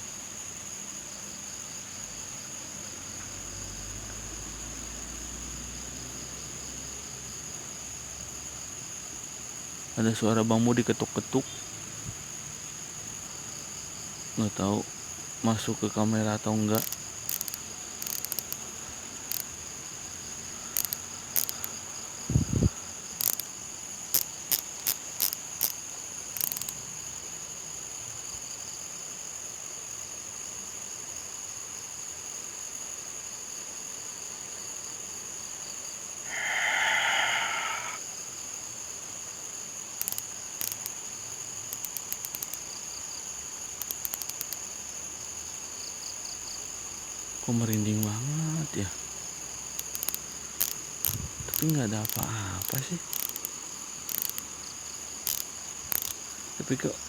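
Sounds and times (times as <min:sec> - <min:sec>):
crickets chirring: 0:00.0 - 0:57.0
sharp clicks and ticks: 0:16.7 - 0:18.7, 0:19.3 - 0:19.6, 0:20.8 - 0:21.8, 0:23.2 - 0:23.5, 0:24.1 - 0:26.8, 0:40.0 - 0:41.0, 0:41.6 - 0:42.7, 0:43.8 - 0:44.6, 0:47.6 - 0:48.4, 0:49.7 - 0:54.6, 0:55.2 - 0:56.2.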